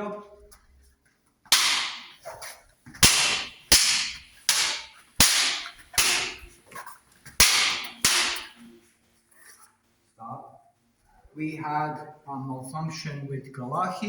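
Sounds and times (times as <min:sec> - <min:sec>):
steel blades clashing: 0:01.6 - 0:02.2, 0:03.0 - 0:06.5, 0:07.4 - 0:08.6.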